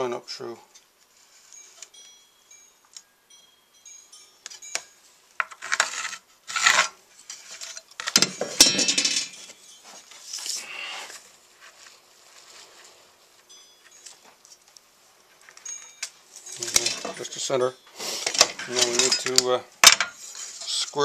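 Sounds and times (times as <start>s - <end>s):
tools clinking on wood: 7.2s - 10.2s, 15.4s - 20.8s.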